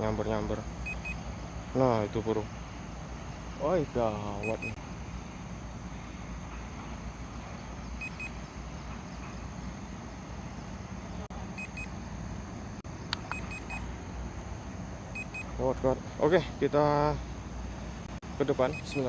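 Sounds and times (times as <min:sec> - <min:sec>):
remote controller beeping: 0:00.8 - 0:01.2, 0:04.4 - 0:04.8, 0:08.0 - 0:08.4, 0:11.6 - 0:11.9, 0:13.2 - 0:13.8, 0:15.2 - 0:15.5, 0:18.7 - 0:19.0.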